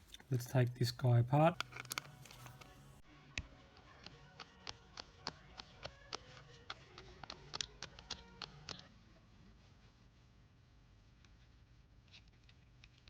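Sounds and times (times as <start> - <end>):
plastic clicks and taps: 1.5 - 2.7.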